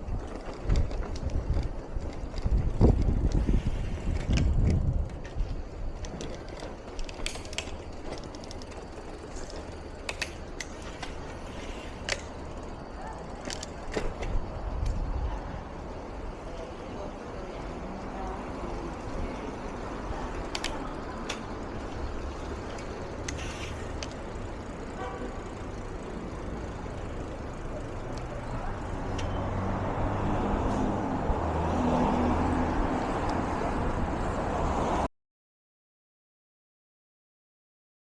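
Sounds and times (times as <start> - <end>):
road and wind noise: 0.0 - 35.1
sharp clicks: 7.0 - 11.2, 20.4 - 21.4.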